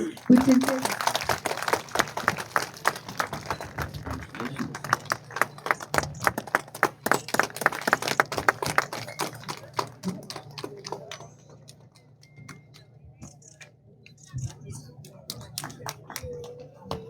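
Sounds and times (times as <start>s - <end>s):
audience applauding: 0.0s - 11.4s
separate hand claps: 0.2s - 11.8s, 15.2s - 17.0s.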